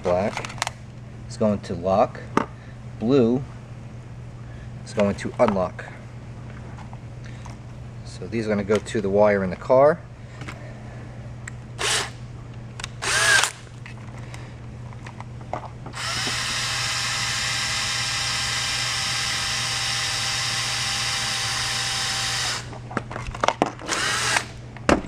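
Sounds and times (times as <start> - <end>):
handheld power tool motor: 11.8 - 12.2, 12.8 - 13.7, 15.9 - 22.7, 23.8 - 24.6.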